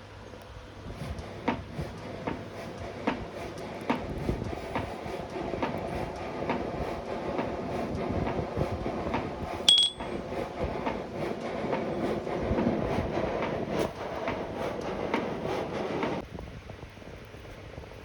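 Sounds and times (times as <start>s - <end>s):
ringing metal strike: 9.7s - 10.1s.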